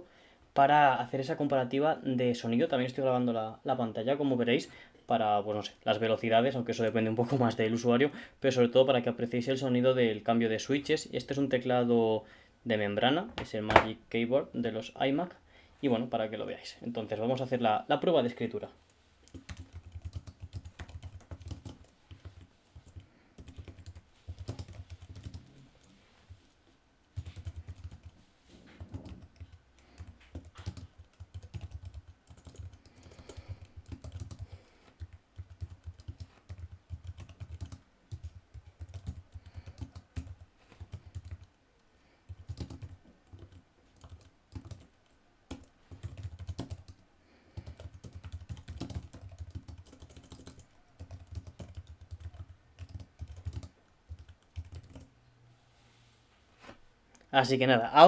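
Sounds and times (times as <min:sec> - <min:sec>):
keyboard typing: 0:19.2 - 0:25.9, 0:27.2 - 0:28.2, 0:28.8 - 0:41.5, 0:42.3 - 0:47.0, 0:47.6 - 0:55.1.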